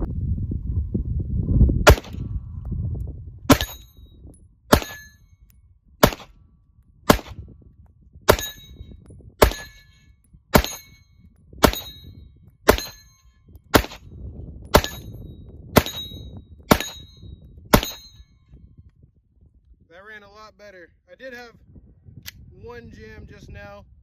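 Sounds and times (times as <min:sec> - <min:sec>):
wind rumble on microphone: 0:00.0 - 0:24.0
pistol shots: 0:01.9 - 0:02.3, 0:03.5 - 0:03.8, 0:04.7 - 0:05.1, 0:06.0 - 0:06.3, 0:07.1 - 0:07.4, 0:09.4 - 0:09.9, 0:10.5 - 0:11.0, 0:11.6 - 0:12.0, 0:12.7 - 0:13.1, 0:13.7 - 0:14.0, 0:14.7 - 0:15.1, 0:15.8 - 0:17.1, 0:17.7 - 0:18.1
metallic ring of struck steel: 0:03.5 - 0:05.4, 0:08.3 - 0:13.4, 0:14.7 - 0:18.5.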